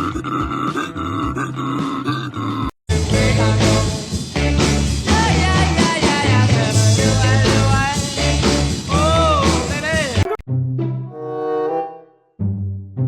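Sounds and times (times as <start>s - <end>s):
loud rock music: 2.9s - 10.4s.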